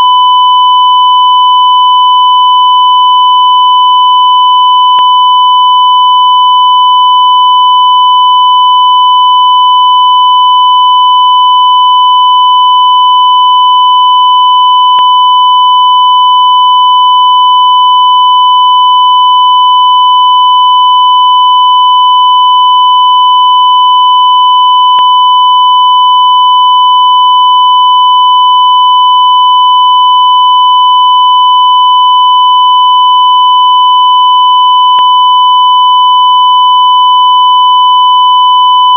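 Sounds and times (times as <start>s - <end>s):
high-pitched censorship beep: 0.0s - 1.2s.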